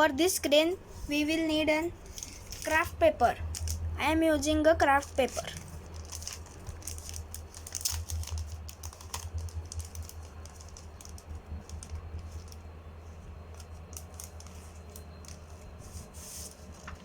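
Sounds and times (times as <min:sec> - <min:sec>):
steady low hum: 0:00.0 - 0:17.0
paper rustling and clicking: 0:05.0 - 0:12.6, 0:13.5 - 0:17.0.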